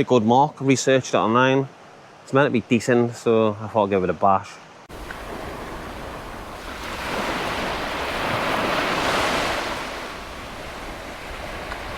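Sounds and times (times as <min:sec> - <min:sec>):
sea waves breaking on shore: 0:04.8 - 0:11.9
wind rumbling on microphone: 0:04.9 - 0:11.9.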